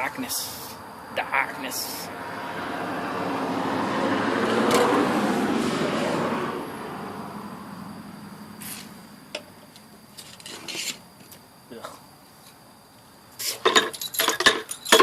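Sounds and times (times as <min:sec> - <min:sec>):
vehicle passing by: 0:01.0 - 0:09.2.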